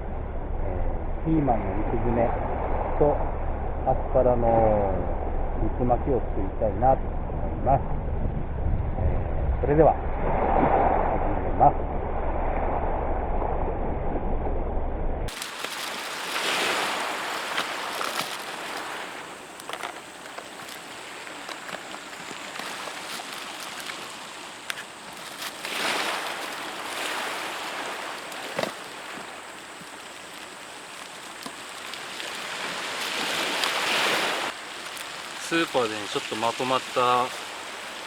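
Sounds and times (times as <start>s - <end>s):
sea waves washing onto beach: 15.3s - 38.0s.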